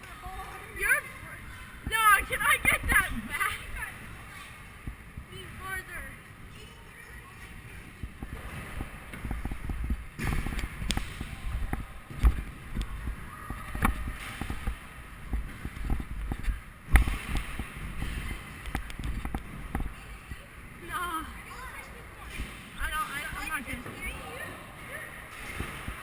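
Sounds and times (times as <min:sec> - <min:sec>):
loud thumps: 0:08.2 - 0:16.1.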